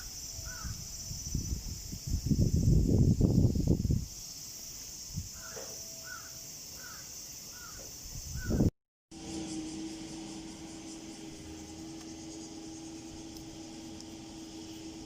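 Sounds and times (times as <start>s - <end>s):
steady hum: 0.0s - 15.0s
crow cawing: 0.5s - 0.8s, 5.4s - 7.8s.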